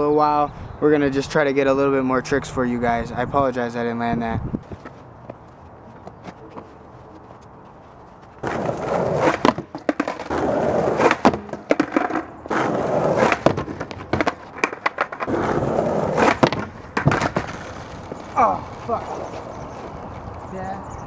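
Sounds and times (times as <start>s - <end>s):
skateboard wheels rolling: 4.5s - 20.5s
skateboard popping and landing: 8.4s - 19.0s.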